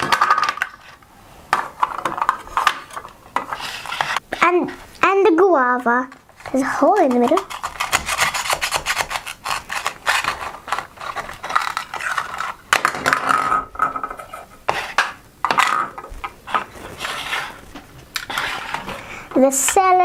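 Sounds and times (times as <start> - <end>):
toy pieces clicking and clattering: 0.0 - 1.0, 6.4 - 14.3.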